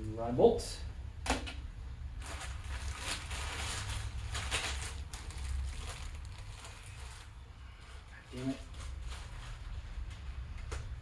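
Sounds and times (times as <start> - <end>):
metal parts clicking and rustling: 2.2 - 7.2.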